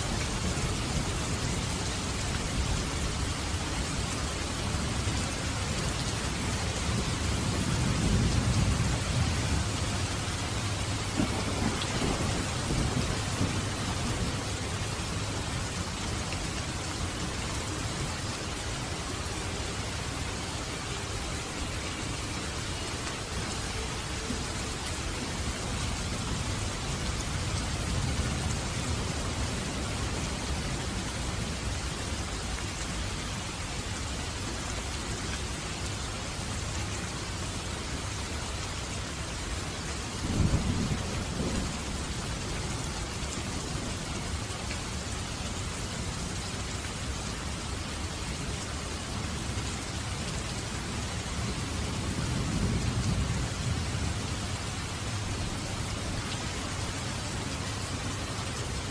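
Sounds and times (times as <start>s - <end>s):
heavy rain: 0.0s - 58.9s
low thunder rumbling: 5.8s - 16.2s, 40.1s - 43.3s
thunderclap: 11.0s - 14.4s.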